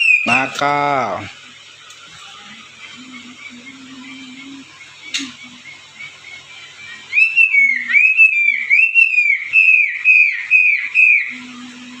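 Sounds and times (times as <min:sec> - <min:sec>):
bird whistling song: 0:00.0 - 0:00.5, 0:03.0 - 0:11.5.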